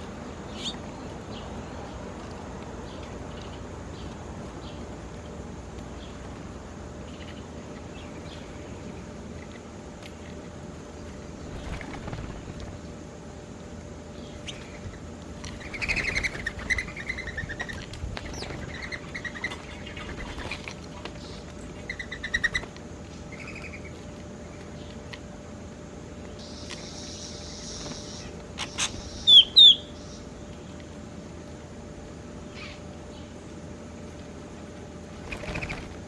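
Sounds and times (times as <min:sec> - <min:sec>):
birds chirping: 0:00.0 - 0:09.4, 0:14.0 - 0:30.8
low background rumble: 0:00.0 - 0:36.0.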